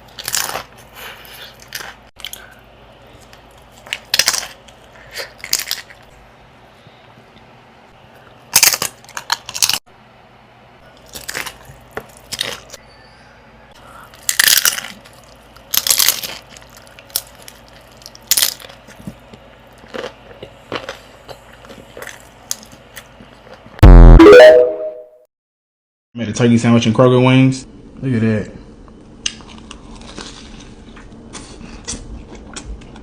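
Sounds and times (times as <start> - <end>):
crunching crisp food: 0.0 - 6.1, 8.4 - 9.8, 10.9 - 12.8, 13.9 - 23.7, 29.2 - 32.9.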